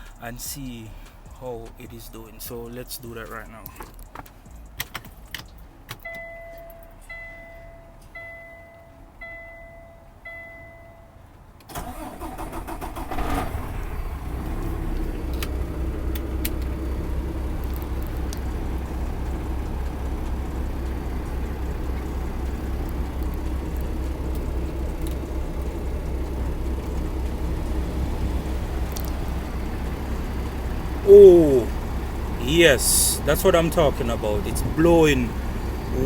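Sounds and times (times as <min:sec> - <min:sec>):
diesel engine cranking and idling: 0:00.0 - 0:36.0
electronic dash chime: 0:06.0 - 0:11.2.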